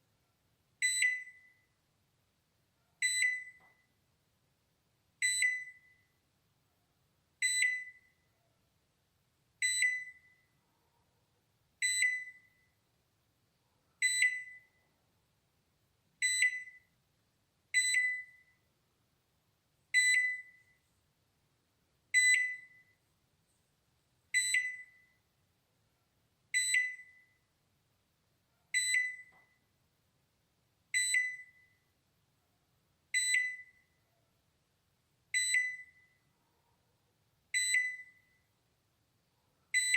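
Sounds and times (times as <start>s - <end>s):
microwave alarm tone: 0.8s - 1.7s, 3.0s - 3.9s, 5.2s - 6.1s, 7.4s - 8.2s, 9.6s - 10.5s, 11.8s - 12.8s, 14.0s - 14.8s, 16.2s - 17.0s, 17.8s - 18.6s, 20.0s - 20.8s, 22.1s - 23.0s, 24.4s - 25.2s, 26.6s - 27.4s, 28.8s - 29.6s, 31.0s - 31.8s, 33.1s - 34.0s, 35.3s - 36.3s, 37.5s - 38.5s.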